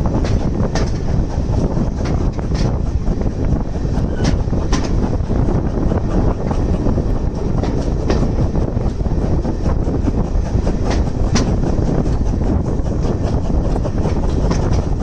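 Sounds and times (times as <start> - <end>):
train carriage rumbling: 0.0 - 15.0
wheels clicking on rails: 0.0 - 15.0.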